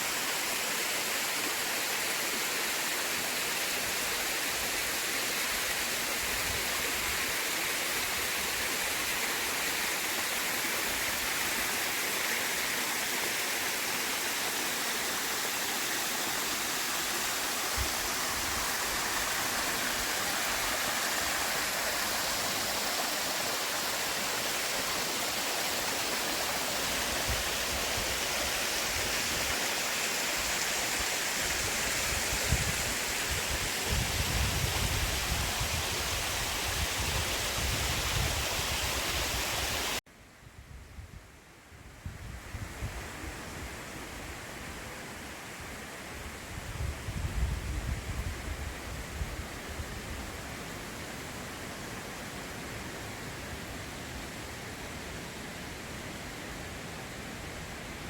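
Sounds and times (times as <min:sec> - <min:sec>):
stream water rushing: 0:00.0 - 0:40.0.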